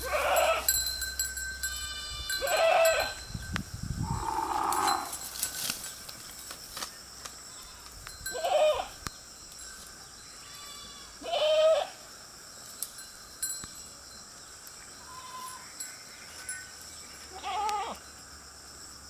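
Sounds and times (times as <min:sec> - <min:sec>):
goats bleating: 0:00.0 - 0:00.7, 0:01.7 - 0:03.2, 0:10.4 - 0:12.0, 0:17.3 - 0:18.0.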